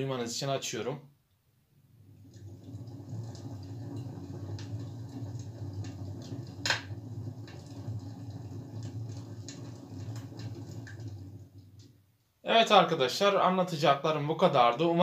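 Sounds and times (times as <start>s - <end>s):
fireplace crackle on television: 2.2s - 12.0s.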